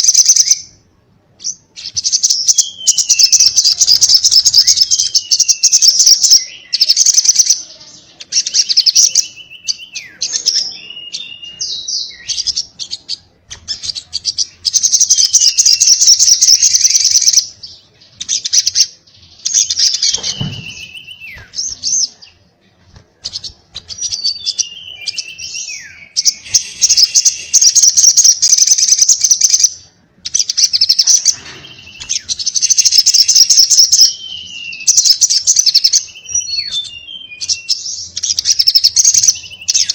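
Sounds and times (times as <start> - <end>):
bird singing stuttering chatter: 0.0 - 39.9.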